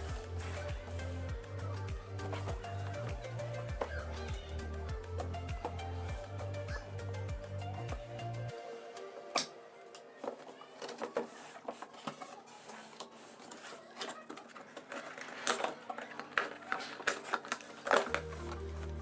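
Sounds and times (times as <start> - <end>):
plastic toy car clicks and rattles: 13.0 - 18.6.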